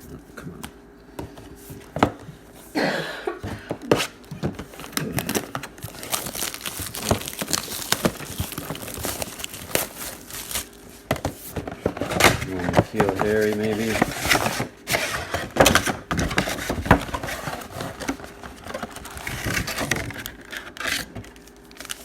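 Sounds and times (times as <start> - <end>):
wrappers crinkling and tearing: 4.7 - 10.8, 12.0 - 22.0.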